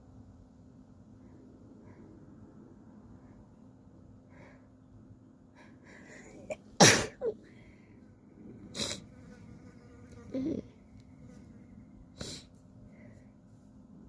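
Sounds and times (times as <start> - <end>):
person sneezing: 6.8 - 7.4.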